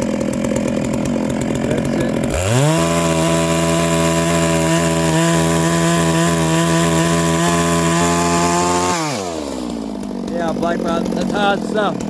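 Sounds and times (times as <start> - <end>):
chainsaw cutting wood: 0.0 - 12.0.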